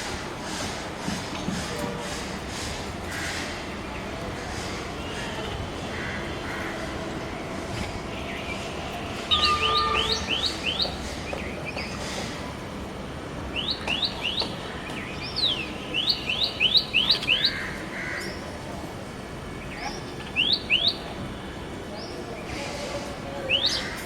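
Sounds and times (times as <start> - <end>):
steady background noise: 0.0 - 24.0.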